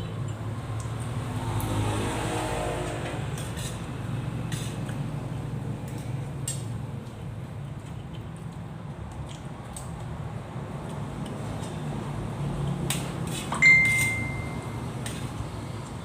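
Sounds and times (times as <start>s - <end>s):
vehicle engine passing: 1.0s - 6.3s.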